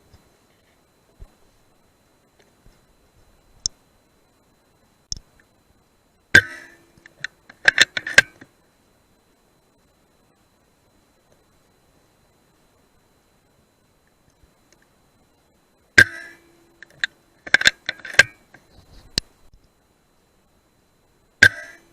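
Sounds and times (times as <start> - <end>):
faint ticks: 2.3 - 3.8, 5.1 - 5.8, 11.2 - 11.6, 14.0 - 15.4, 16.0 - 20.3
sharp clicks and knocks: 6.4 - 8.5, 16.0 - 19.8, 21.4 - 21.8
rifle shot: 21.4 - 21.8.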